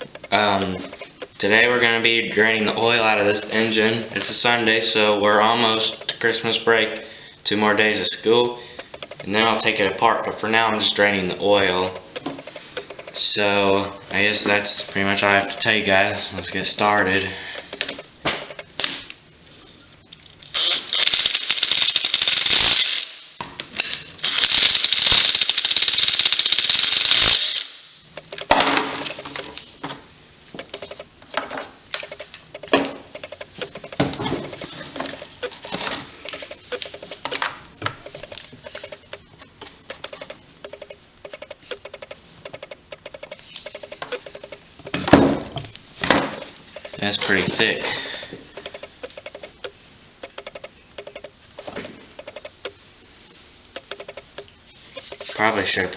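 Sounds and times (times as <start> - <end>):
metallic tool clicks and rattles: 0.0 - 1.4, 5.8 - 6.3, 8.8 - 9.3, 11.8 - 13.4, 17.6 - 18.7, 28.2 - 29.5, 30.6 - 31.2, 31.9 - 39.3, 39.9 - 45.0, 46.8 - 47.1, 48.0 - 52.7, 53.8 - 55.4.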